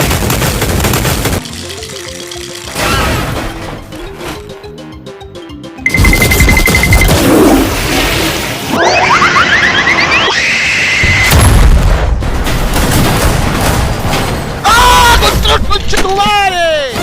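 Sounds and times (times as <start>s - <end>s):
short beeping tone: 5.8s - 7.2s
cartoon booming and crashing: 7.0s - 15.7s.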